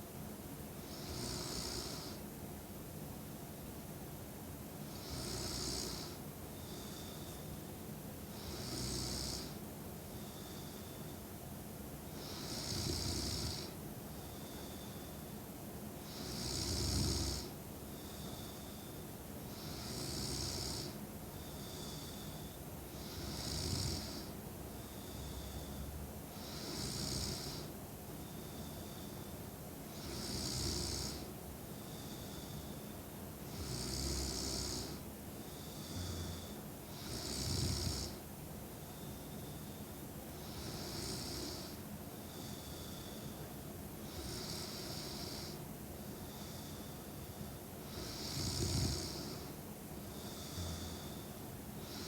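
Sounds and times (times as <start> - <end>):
woman snoring: 1.0 - 2.2, 4.9 - 6.2, 8.4 - 9.6, 12.2 - 13.8, 16.1 - 17.6, 19.5 - 22.4, 23.0 - 24.4, 26.4 - 27.7, 29.9 - 31.3, 33.5 - 35.0, 35.6 - 38.2, 40.4 - 41.8, 44.1 - 45.6, 47.8 - 52.0.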